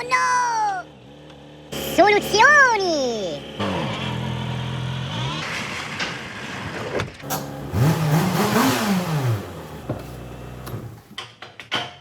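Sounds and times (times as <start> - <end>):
car engine revving: 1.1 - 6.1, 7.2 - 11.1.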